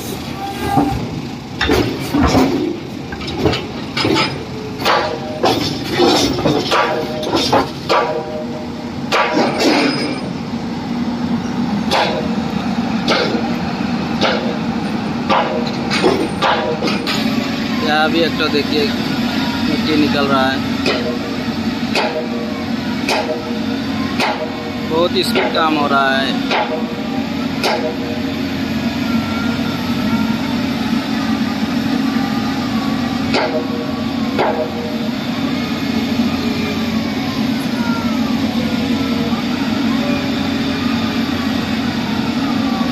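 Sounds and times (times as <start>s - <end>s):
construction machine engine running: 0.0s - 42.9s
loud metal clanks and knocks: 0.6s - 10.4s, 11.8s - 12.4s, 13.0s - 17.4s, 20.8s - 21.3s, 21.9s - 22.4s, 23.0s - 23.6s, 24.2s - 24.6s, 25.2s - 25.7s, 26.4s - 26.9s, 27.6s - 28.1s, 33.3s - 34.9s.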